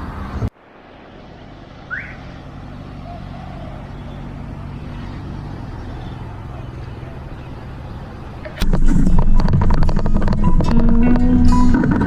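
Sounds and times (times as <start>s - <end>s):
motorcycle engine running: 6.4s - 12.0s.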